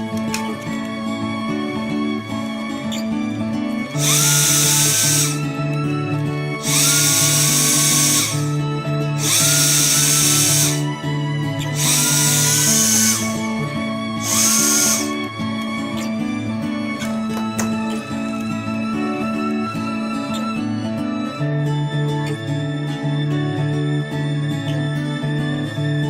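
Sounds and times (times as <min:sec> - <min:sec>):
background music: 0:00.0 - 0:26.0
power drill whining: 0:02.4 - 0:05.6, 0:06.6 - 0:18.8.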